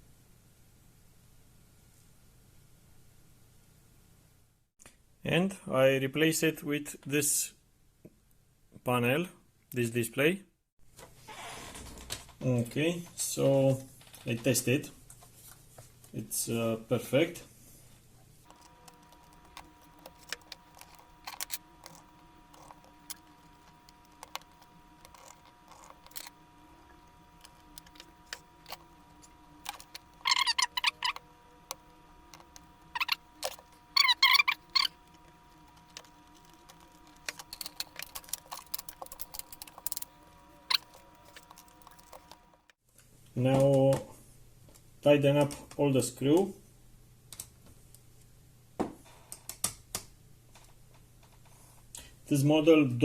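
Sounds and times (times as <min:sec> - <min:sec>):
rapid clicking rattle: 0:18.5 - 0:42.8.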